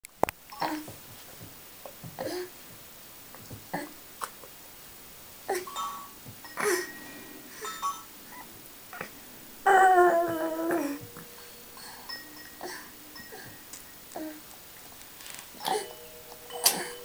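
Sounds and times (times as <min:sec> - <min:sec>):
baby babbling: 0:09.7 - 0:11.3, 0:15.6 - 0:16.0.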